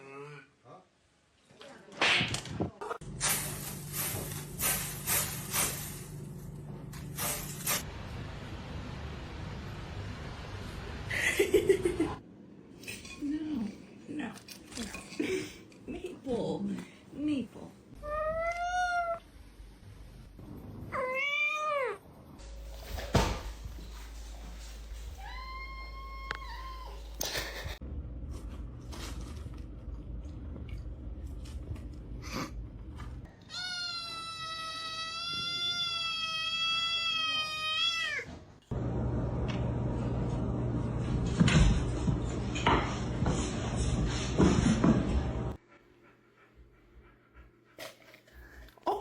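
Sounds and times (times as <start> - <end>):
cat meowing: 18.0 - 19.2, 21.0 - 22.0, 33.5 - 38.3.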